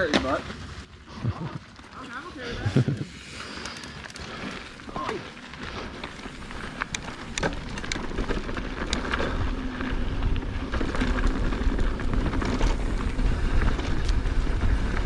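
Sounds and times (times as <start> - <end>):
bike tyre noise on dirt: 0.0 - 15.0
wind rumble on microphone: 6.1 - 15.0.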